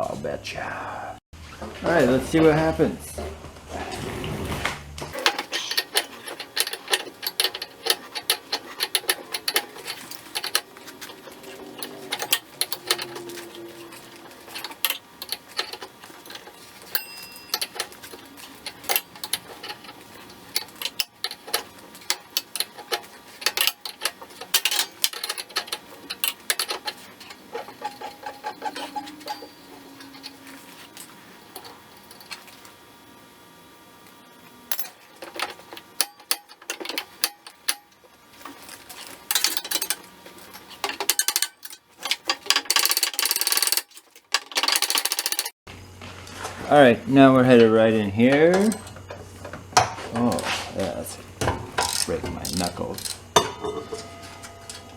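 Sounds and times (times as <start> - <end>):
metal tools knocking and clinking: 5.2 - 30.4, 39.0 - 40.0, 40.8 - 45.5, 51.4 - 54.9
ratchet wrench clicking: 42.5 - 45.5, 51.8 - 53.2.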